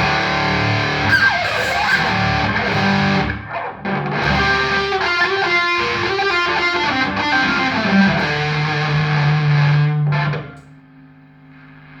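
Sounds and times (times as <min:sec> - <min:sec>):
distorted electric guitar: 0:00.0 - 0:10.8.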